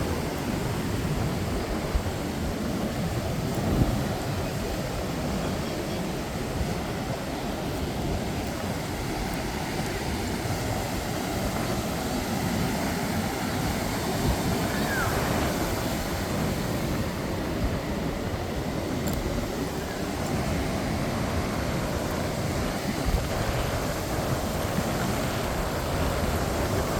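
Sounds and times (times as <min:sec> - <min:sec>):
ocean surf breaking: 0:00.0 - 0:26.9.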